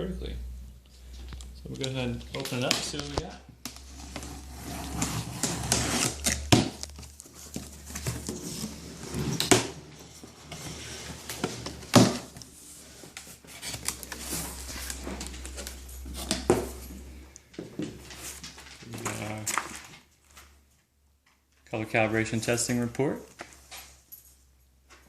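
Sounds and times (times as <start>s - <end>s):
cardboard rustling and scraping: 2.3s - 16.8s.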